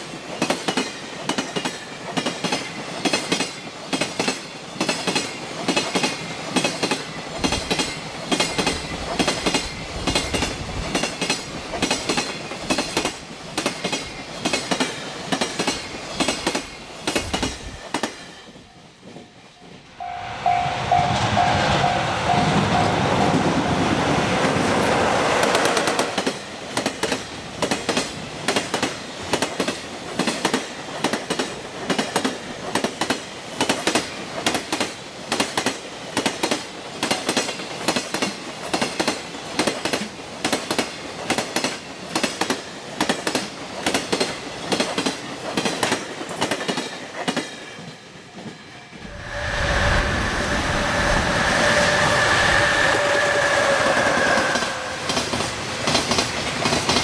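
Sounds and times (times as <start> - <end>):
train wheels clattering over rail joints: 0.4 - 19.3, 25.6 - 48.6
held tone: 19.9 - 23.8, 49.0 - 55.8
steady rush: 19.9 - 26.4, 49.0 - 57.0.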